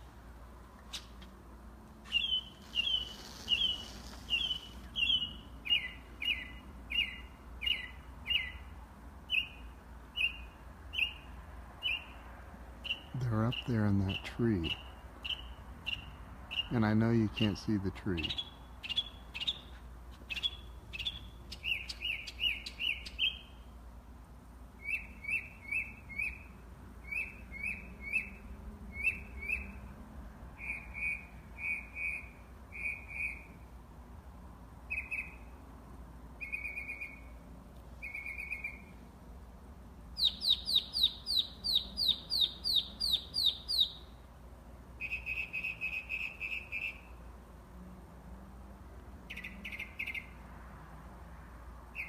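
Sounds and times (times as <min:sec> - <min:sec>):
songbird whistling: 0:02.0 - 0:08.6, 0:18.3 - 0:23.6, 0:24.8 - 0:29.7, 0:34.9 - 0:35.4, 0:36.4 - 0:37.3, 0:38.0 - 0:38.9, 0:40.2 - 0:44.0, 0:45.0 - 0:47.1.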